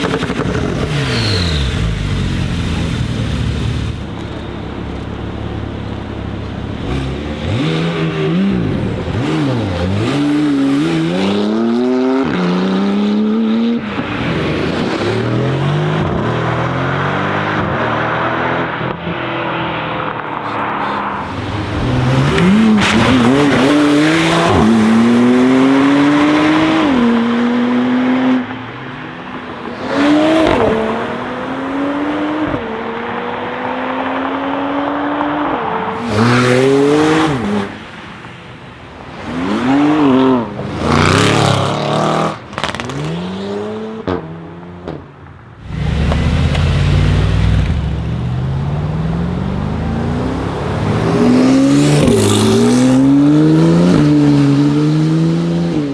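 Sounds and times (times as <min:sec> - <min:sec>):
car engine accelerating hard: 0:05.5 - 0:38.0, 0:45.6 - 0:55.9
exhaust pops: 0:45.6 - 0:49.2.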